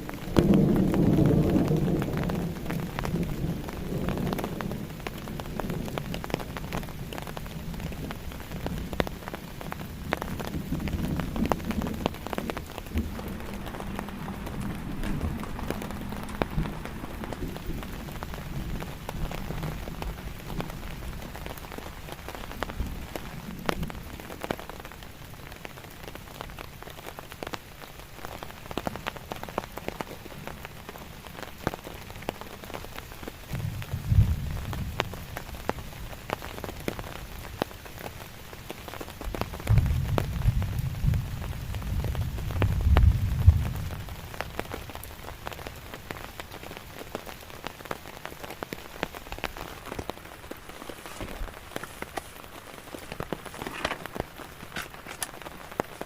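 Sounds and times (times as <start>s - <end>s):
rain falling on a tent: 0.0s - 56.0s.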